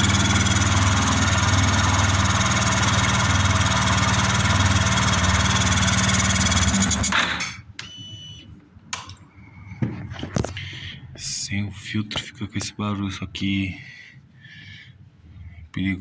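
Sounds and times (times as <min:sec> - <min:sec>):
motorcycle engine idling: 0:00.0 - 0:07.0.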